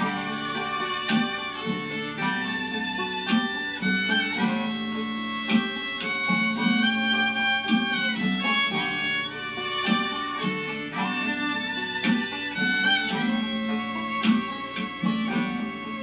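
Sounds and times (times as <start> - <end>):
live band instrumental: 0.0 - 16.0.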